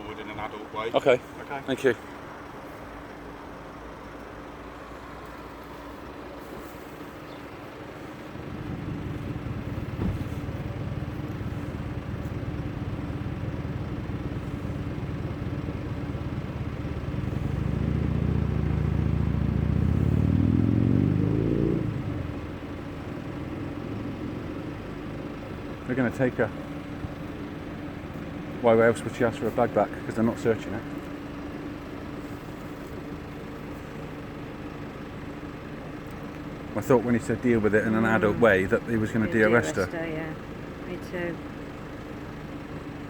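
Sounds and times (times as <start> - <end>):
vehicle engine accelerating: 4.6 - 40.4.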